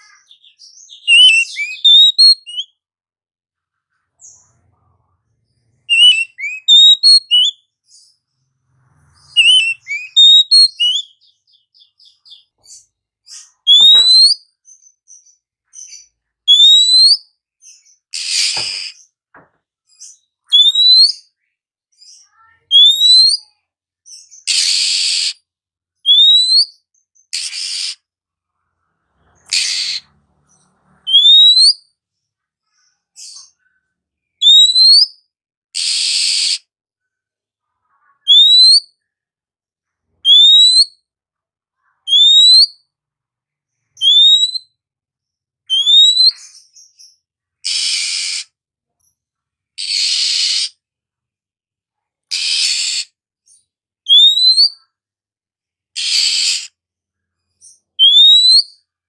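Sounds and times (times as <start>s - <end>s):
harsh raspy bird notes: 0.0s - 2.7s, 5.8s - 7.6s, 8.8s - 12.6s, 13.4s - 14.4s, 29.4s - 31.8s, 49.8s - 50.8s
bird singing rising whistle: 1.0s - 2.7s, 5.9s - 7.6s, 9.3s - 11.1s, 31.1s - 31.8s, 44.0s - 44.6s, 58.0s - 58.7s.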